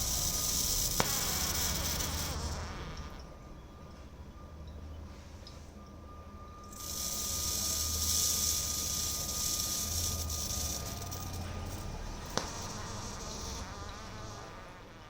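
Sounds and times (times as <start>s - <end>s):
gas hissing: 0.0s - 3.1s, 6.7s - 14.6s
machine humming: 0.0s - 4.4s, 6.2s - 14.7s.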